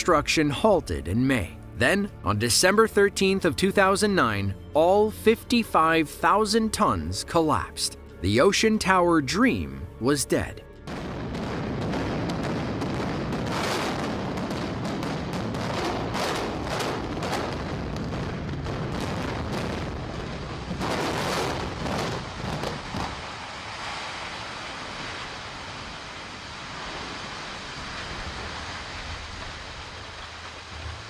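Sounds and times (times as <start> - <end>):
building collapse rumble: 10.9 - 31.0.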